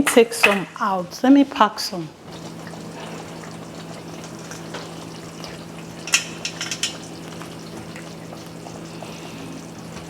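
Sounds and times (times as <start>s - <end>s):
steady low hum: 1.9s - 10.0s
utensil clinking against cookware: 6.0s - 7.1s.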